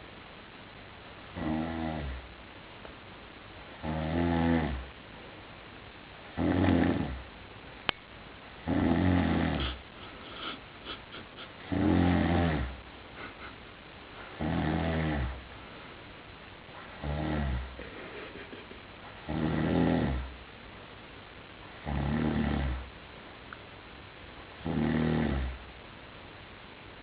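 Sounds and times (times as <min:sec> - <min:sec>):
loud rattling snores: 0:01.4 - 0:02.2, 0:03.8 - 0:04.8, 0:06.4 - 0:07.2, 0:08.6 - 0:09.8, 0:11.7 - 0:12.7, 0:14.4 - 0:15.4, 0:17.0 - 0:17.6, 0:19.3 - 0:20.2, 0:21.8 - 0:22.8, 0:24.6 - 0:25.6.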